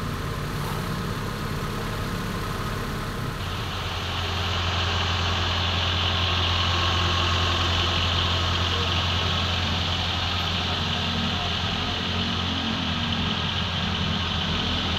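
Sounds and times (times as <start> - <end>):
car engine idling: 0.0 - 14.9.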